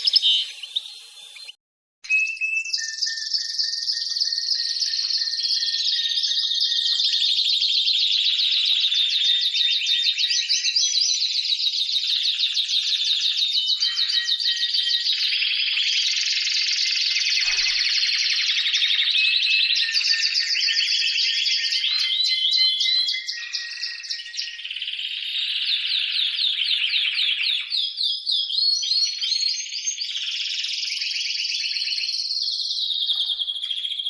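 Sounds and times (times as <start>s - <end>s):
birds trilling: 0.0s - 1.6s, 3.0s - 28.0s.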